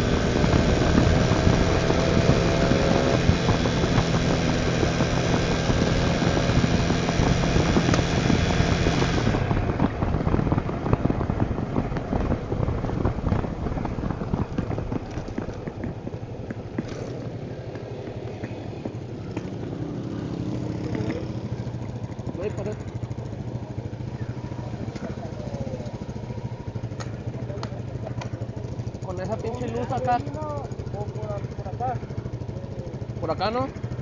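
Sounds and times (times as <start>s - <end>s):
wind buffeting microphone: 0.0s - 27.0s
motorcycle engine running: 0.0s - 34.0s.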